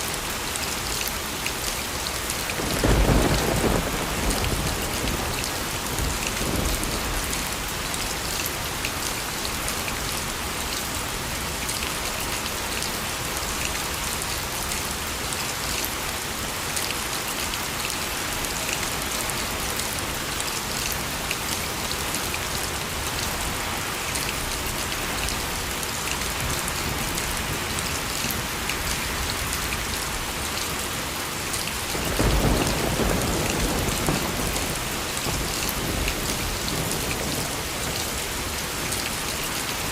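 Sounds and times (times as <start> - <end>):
steady rainfall: 0.0 - 39.9
thunder rumbling: 2.6 - 7.6, 31.9 - 38.6.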